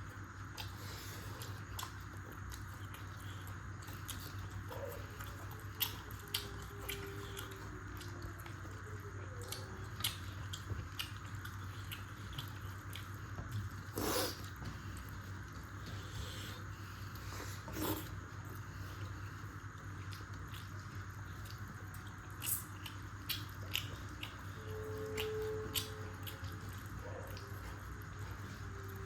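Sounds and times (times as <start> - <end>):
chewing food: 0.0 - 29.0
steady background hum: 0.0 - 29.0.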